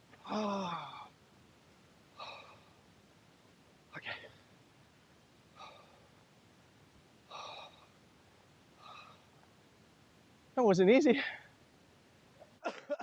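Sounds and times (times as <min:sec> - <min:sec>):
person breathing heavily: 0:00.2 - 0:01.1, 0:02.2 - 0:02.8, 0:05.5 - 0:06.2, 0:07.3 - 0:08.0, 0:08.8 - 0:09.3.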